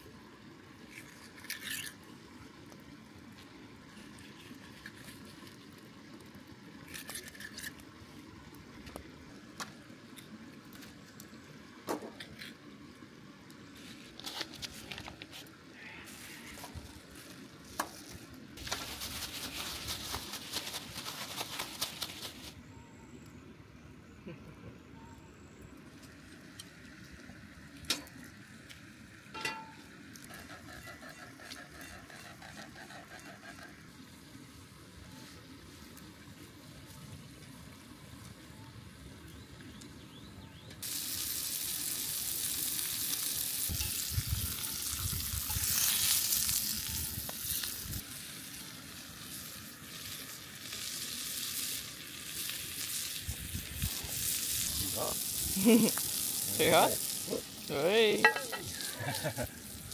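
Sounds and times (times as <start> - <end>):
fish sizzling in a pan: 40.8 - 59.9.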